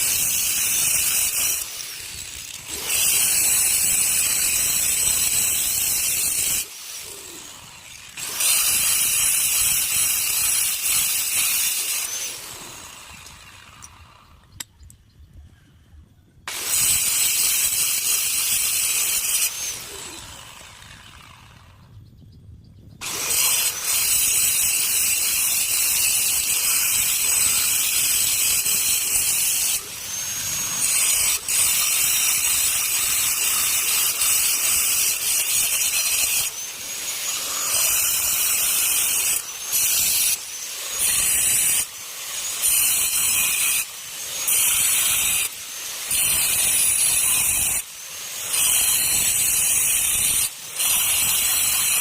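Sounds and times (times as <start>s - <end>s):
power grinder grinding stone: 0.0s - 14.6s, 16.5s - 21.8s, 23.0s - 52.0s.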